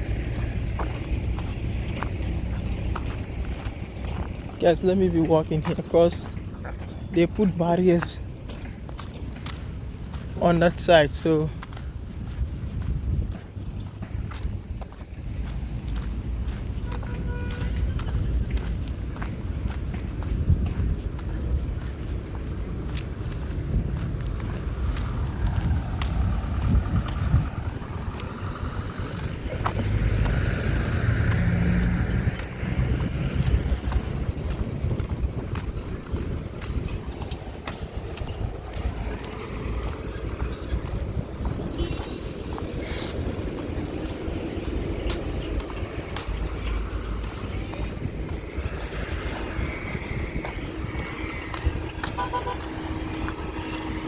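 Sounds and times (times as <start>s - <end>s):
traffic rumble: 0.0s - 54.0s
vehicle engine running: 24.0s - 54.0s.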